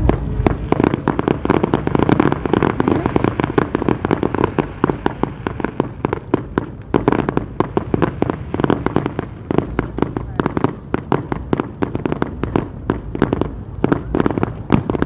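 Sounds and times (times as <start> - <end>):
low rumble: 0.0 - 10.2
fireworks bangs and crackles: 0.0 - 15.0.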